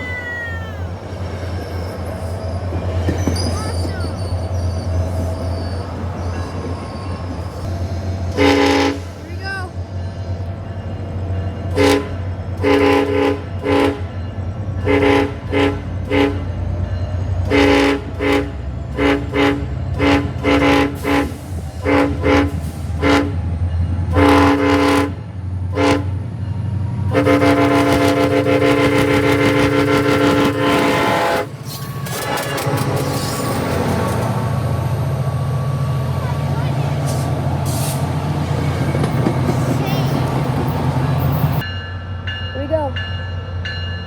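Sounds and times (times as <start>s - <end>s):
locomotive air horn blasts: 8.3s - 9.2s, 11.7s - 14.1s, 14.8s - 16.5s, 17.4s - 23.4s, 24.1s - 26.2s, 27.1s - 33.3s.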